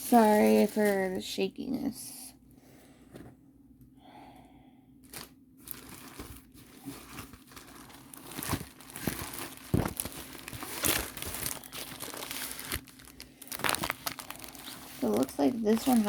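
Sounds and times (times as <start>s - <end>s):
packaging crinkling and rustling: 0.0s - 1.4s, 5.0s - 16.0s.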